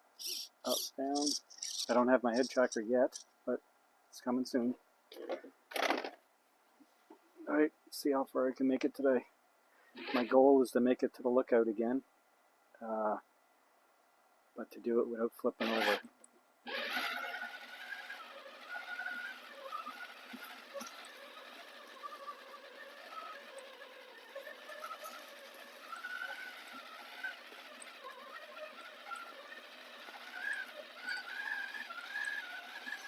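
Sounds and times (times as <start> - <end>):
electric motor and gear whine: 0.2 - 3.2, 16.7 - 33.0.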